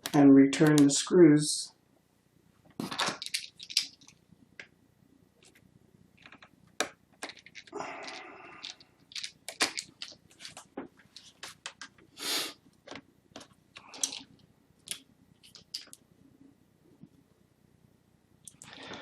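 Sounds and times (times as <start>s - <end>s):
metal screws clicking and rattling: 2.9s - 4.2s, 7.2s - 10.6s, 13.8s - 16.0s.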